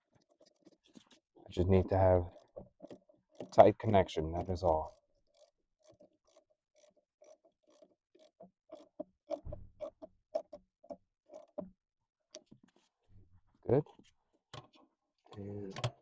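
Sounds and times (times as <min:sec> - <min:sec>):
ratchet wrench clicking: 0:02.3 - 0:03.7, 0:04.4 - 0:10.6.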